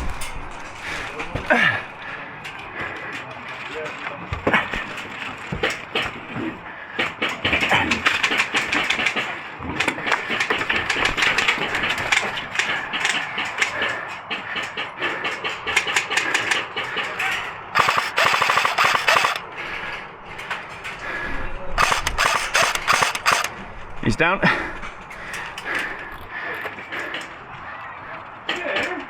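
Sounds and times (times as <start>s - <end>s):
airsoft guns firing full auto: 7.8s - 9.3s, 15.7s - 17.2s, 17.8s - 19.5s, 21.8s - 23.6s.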